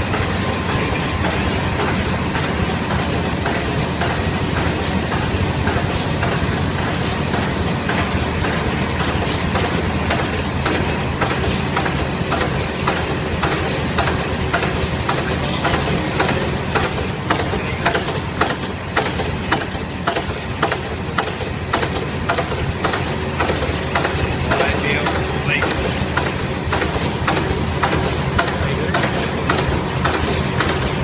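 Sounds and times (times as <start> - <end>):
laminating machine hum: 0.0 - 31.0
machine regular clicks: 0.1 - 31.0.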